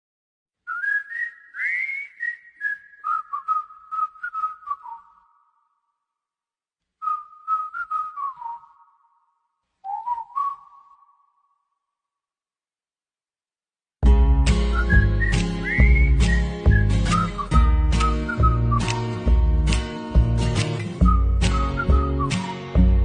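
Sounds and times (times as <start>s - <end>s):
person whistling a tune: 0.7s - 5.4s, 7.0s - 9.1s, 9.8s - 11.4s, 14.6s - 19.3s, 20.9s - 23.0s.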